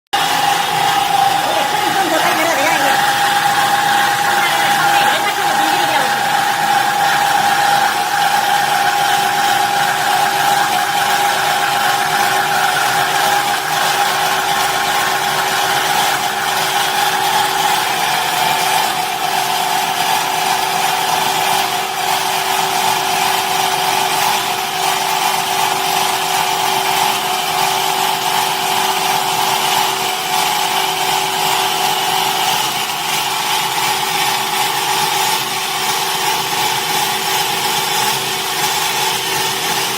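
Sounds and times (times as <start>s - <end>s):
saw machine whine: 0.2s - 39.9s.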